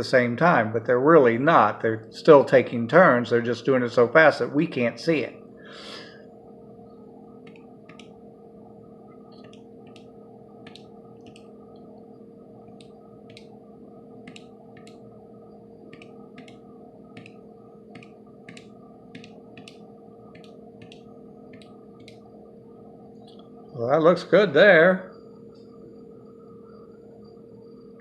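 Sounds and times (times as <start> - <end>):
steady low hum: 0.0 - 28.0
keypad button clicks: 15.9 - 16.6, 18.0 - 19.8.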